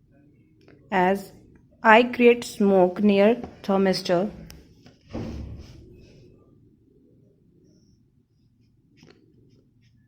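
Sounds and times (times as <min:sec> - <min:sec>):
dull thump: 0:05.1 - 0:06.0.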